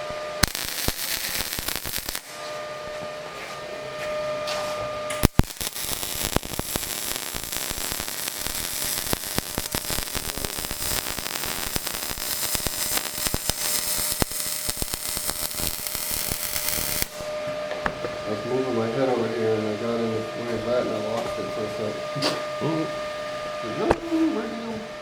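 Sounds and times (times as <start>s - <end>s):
arc welding crackling sizzle: 0.0s - 2.6s, 5.1s - 17.4s.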